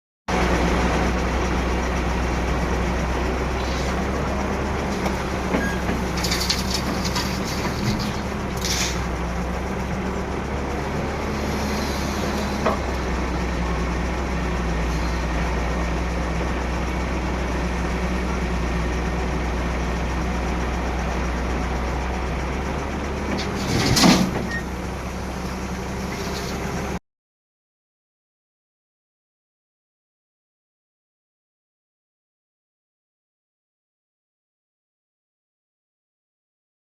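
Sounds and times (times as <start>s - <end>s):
diesel engine running: 0.3s - 27.0s
loud metal clank: 23.4s - 24.6s.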